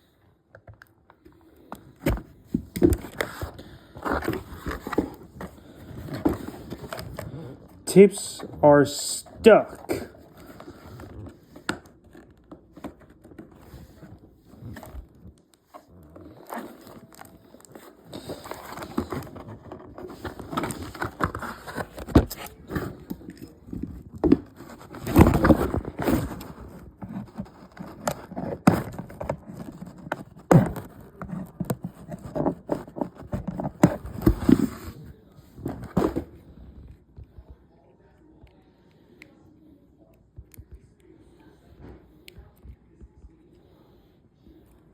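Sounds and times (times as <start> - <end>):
packaging crackling and scraping: 1.6 - 7.8, 9.4 - 36.4.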